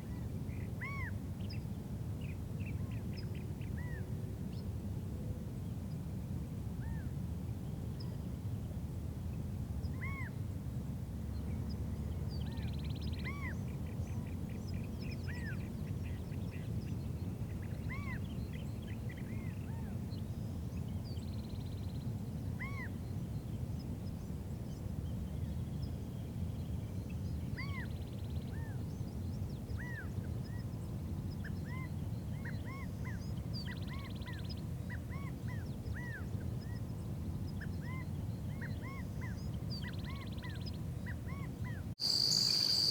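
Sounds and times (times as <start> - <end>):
wild birds calling: 42.0 - 42.9.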